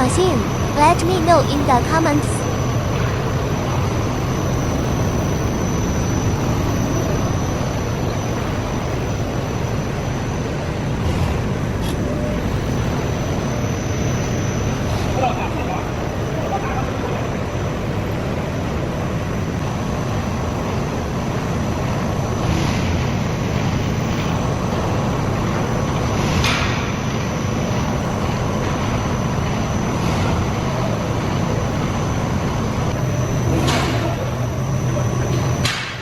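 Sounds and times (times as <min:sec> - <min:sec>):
furnace machinery rumble: 0:00.0 - 0:36.0
thin high whine: 0:00.0 - 0:36.0.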